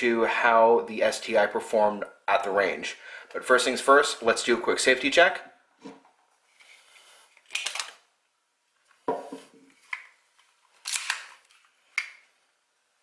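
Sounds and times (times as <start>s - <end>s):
pistol slide clicks and sliding: 10.8s - 11.4s.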